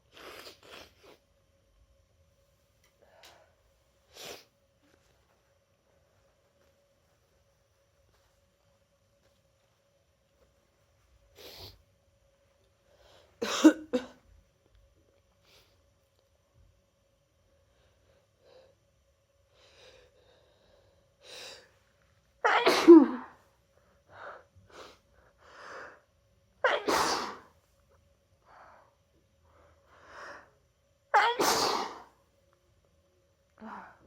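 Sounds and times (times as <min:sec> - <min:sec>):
person sneezing: 0:13.4 - 0:14.2, 0:22.5 - 0:23.4, 0:26.6 - 0:27.5, 0:31.2 - 0:32.2.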